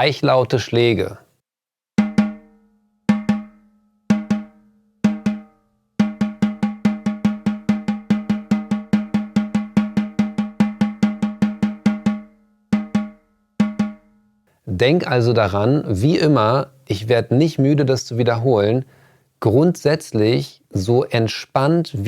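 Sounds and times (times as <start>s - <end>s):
snare drum strokes and roll: 5.1s - 14.0s.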